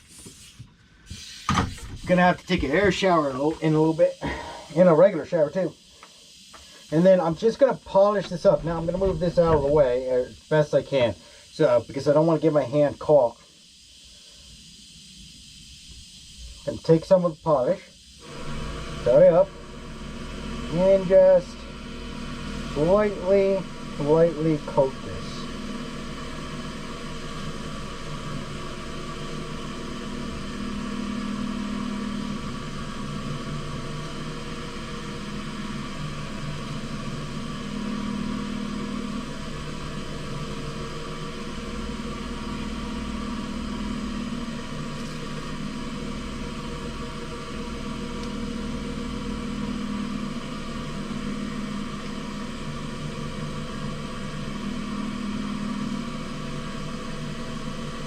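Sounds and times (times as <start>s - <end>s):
low hum: 2.2s - 58.0s
wood lathe running: 18.2s - 58.0s.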